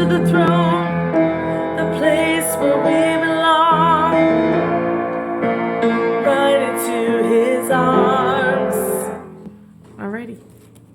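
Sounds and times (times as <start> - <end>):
piano accompaniment: 0.0 - 10.3.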